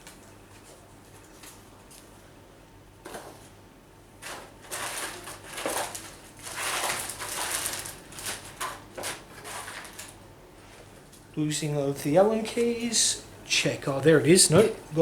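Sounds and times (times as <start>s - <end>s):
rustling packaging and clattering tools: 4.2s - 11.3s.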